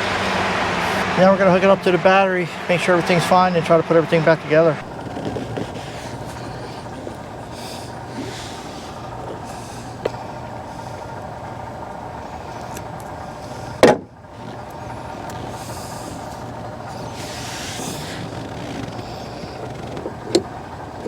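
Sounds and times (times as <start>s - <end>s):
steady background hum: 0.0s - 21.0s
loud clunk: 13.8s - 14.2s.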